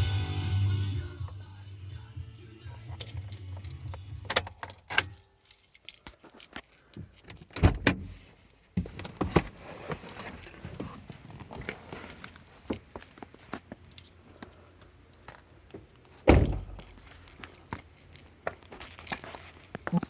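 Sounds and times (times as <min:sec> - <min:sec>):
keys jangling: 0:02.7 - 0:07.6, 0:12.9 - 0:15.3, 0:16.3 - 0:20.0
heavy thump: 0:16.3 - 0:16.9.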